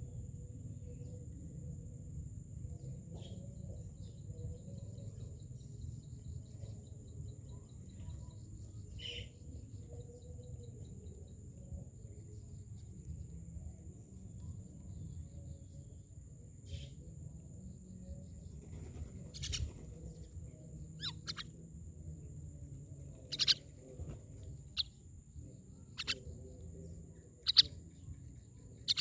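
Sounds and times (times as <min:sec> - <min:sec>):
birds chirping and calling: 0:02.7 - 0:11.4, 0:16.6 - 0:29.0.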